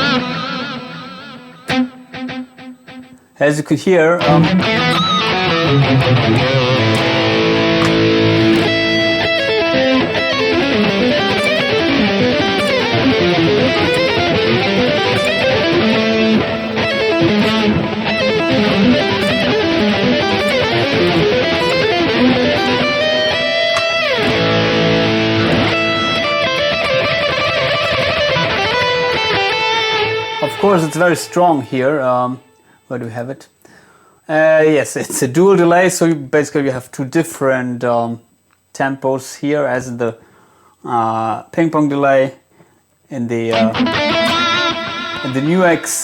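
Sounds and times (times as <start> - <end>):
electric guitar with echoing delay: 0.0 - 3.2, 4.2 - 32.8, 43.5 - 46.0.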